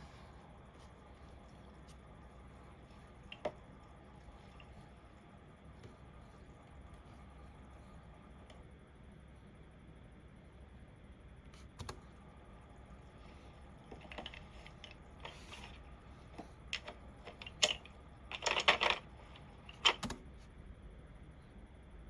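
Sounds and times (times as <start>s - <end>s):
keyboard keystrokes: 11.6s - 12.1s, 16.8s - 20.2s.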